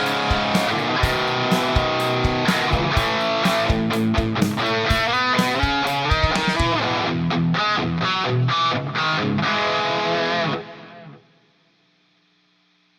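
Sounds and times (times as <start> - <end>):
electric guitar playing chords: 0.0 - 11.2.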